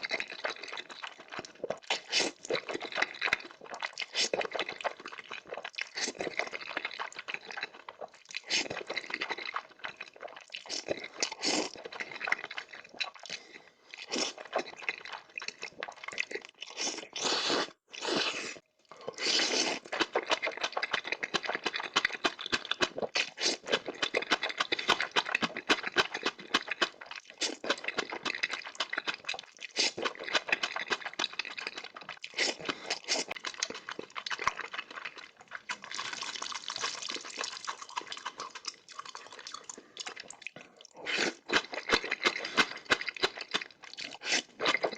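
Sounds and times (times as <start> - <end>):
eating noodles with slurps: 1.7 - 2.9, 16.6 - 34.8, 35.6 - 44.9.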